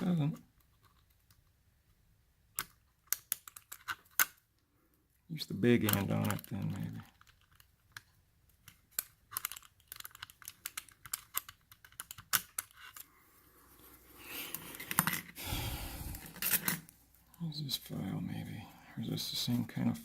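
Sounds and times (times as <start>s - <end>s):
scraping and handling noise: 5.8s - 17.5s.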